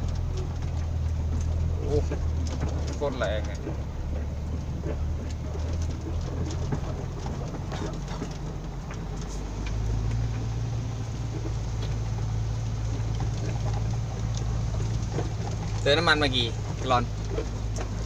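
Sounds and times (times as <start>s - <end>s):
diesel truck engine pulling: 0.0s - 18.0s
light rattles in cab: 0.0s - 18.0s.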